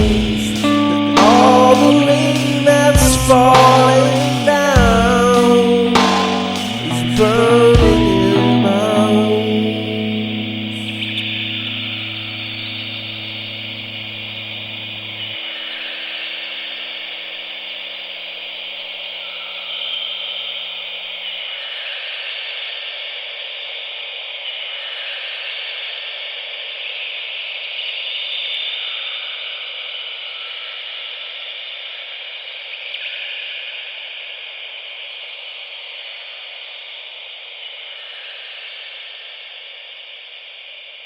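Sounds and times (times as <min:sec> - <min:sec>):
static-like noise hiss: 0:00.0 - 0:41.0.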